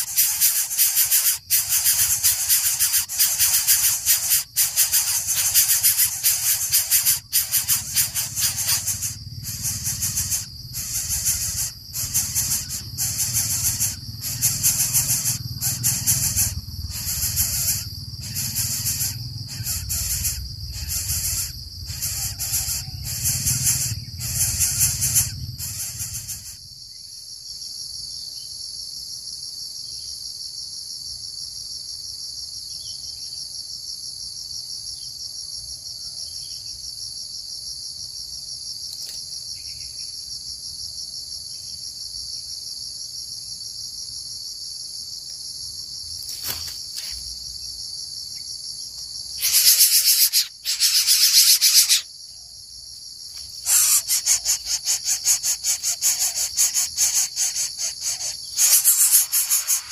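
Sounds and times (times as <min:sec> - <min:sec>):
harsh pulsed insect bursts: 0:00.0 - 0:26.8, 0:46.1 - 0:47.5, 0:49.2 - 0:52.2, 0:53.0 - 0:59.9
insect trilling: 0:00.0 - 0:27.2, 0:45.8 - 0:59.9.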